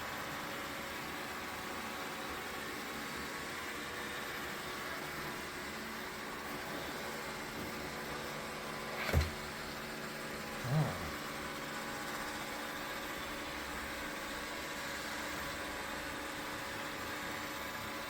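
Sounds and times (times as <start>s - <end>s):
robot vacuum motor hum: 8.9s - 9.5s.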